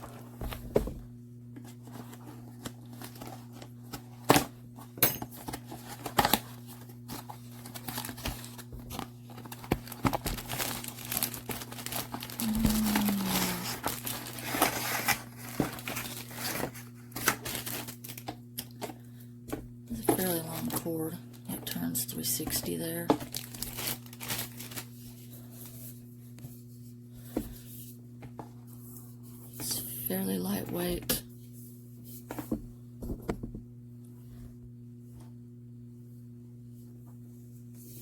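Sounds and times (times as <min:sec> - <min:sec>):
plastic and paper crinkling: 0:01.6 - 0:04.3, 0:05.4 - 0:18.3, 0:20.0 - 0:25.8.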